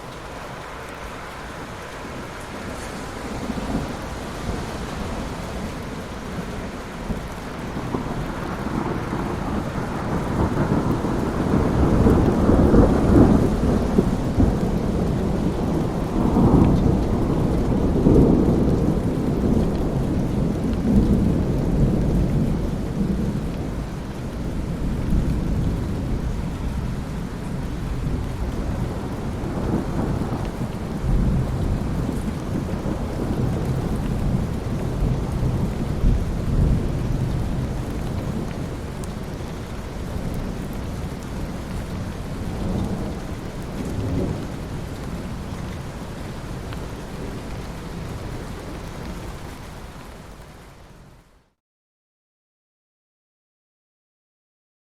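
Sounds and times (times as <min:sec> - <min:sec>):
heavy steady rain: 0:00.0 - 0:51.6
rolling thunder rumbles: 0:01.4 - 0:49.8.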